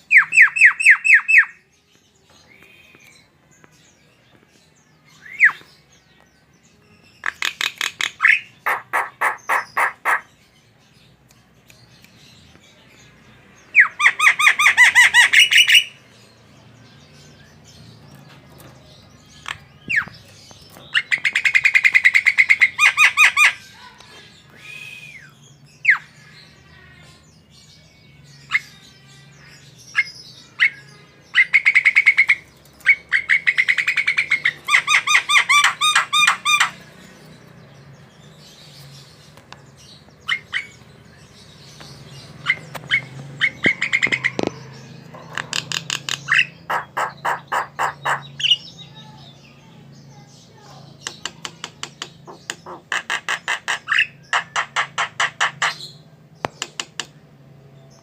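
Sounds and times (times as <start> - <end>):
bird singing harsh repeated notes: 0.0 - 1.7, 7.2 - 10.4, 13.7 - 16.2, 29.4 - 57.2
short whistled bird calls: 24.5 - 25.4.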